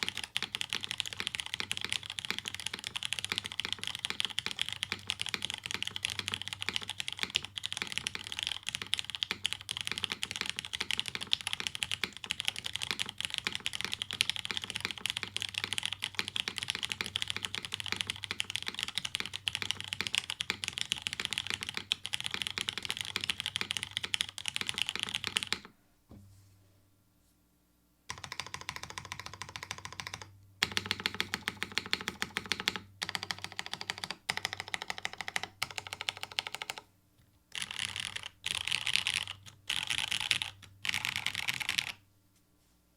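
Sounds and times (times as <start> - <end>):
typing on mechanical keyboard: 0.0 - 25.7, 28.1 - 36.9, 37.5 - 42.0.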